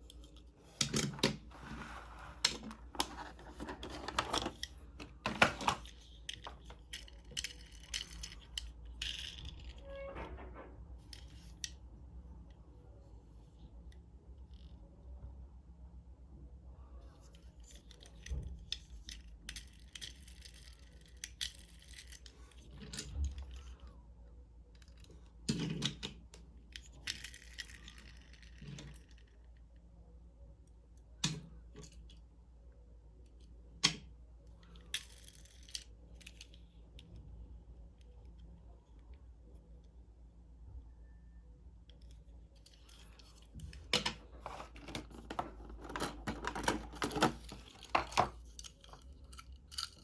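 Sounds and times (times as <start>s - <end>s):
plastic and cardboard rustling: 1.4s - 6.8s, 44.2s - 48.6s.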